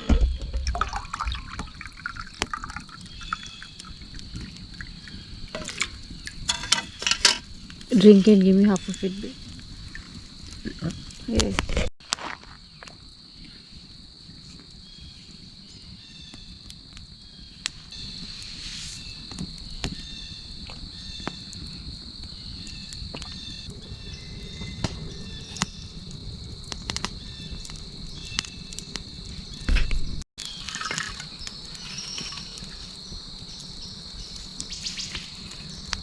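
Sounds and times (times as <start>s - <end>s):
crickets trilling: 0.0s - 36.0s
sharp clicks and crackles: 24.7s - 36.0s.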